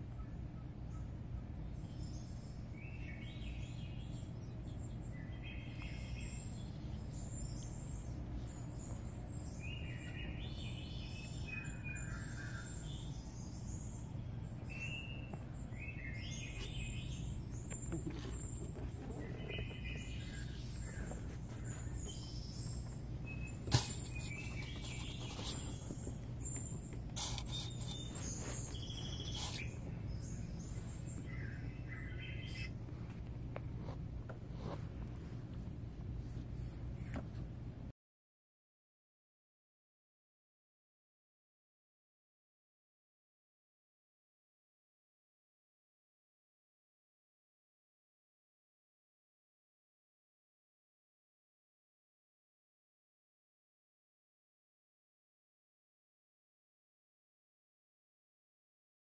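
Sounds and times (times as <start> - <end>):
small birds chirping: 0.0 - 37.9
steady low hum: 0.0 - 37.9.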